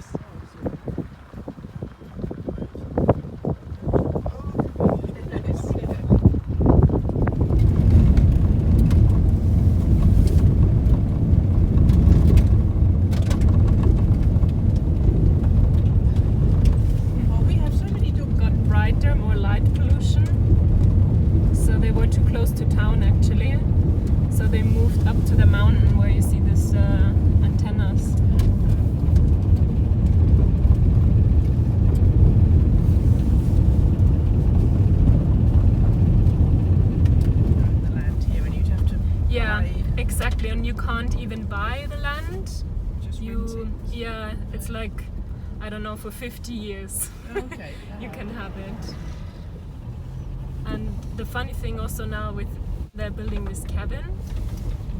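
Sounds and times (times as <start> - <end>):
vehicle engine and road noise: 0.0 - 54.9.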